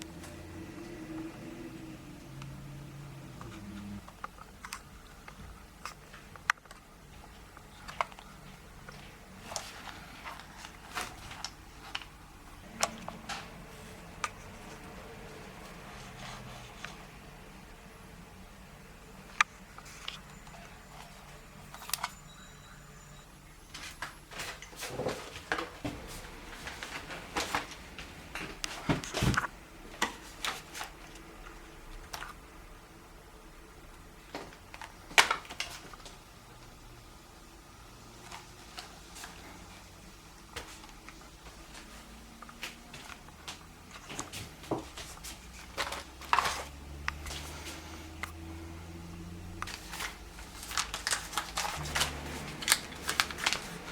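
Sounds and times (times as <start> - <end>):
hands handling plastic packaging: 40.5 - 48.5, 49.5 - 53.9.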